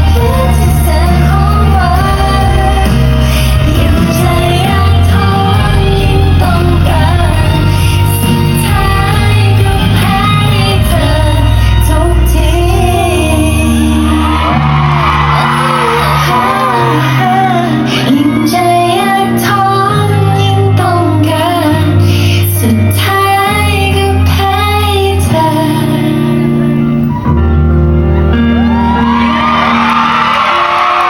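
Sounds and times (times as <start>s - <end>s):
woman singing over backing track: 0.0s - 27.1s
crowd cheering: 13.2s - 19.4s, 28.0s - 31.0s.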